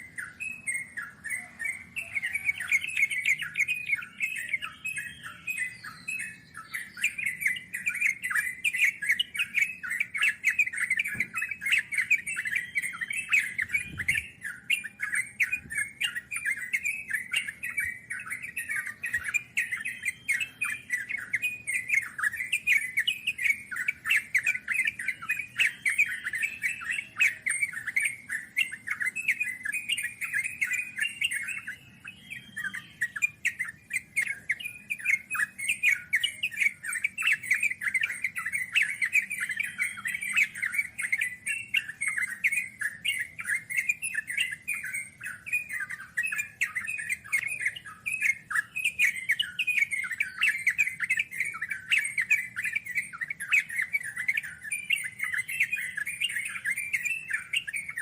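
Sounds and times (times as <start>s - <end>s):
bird singing chattering notes: 0.0s - 58.0s.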